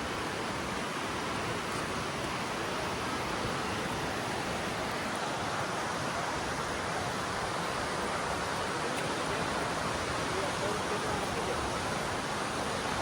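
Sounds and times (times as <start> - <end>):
creek rushing over rocks: 0.0 - 13.0.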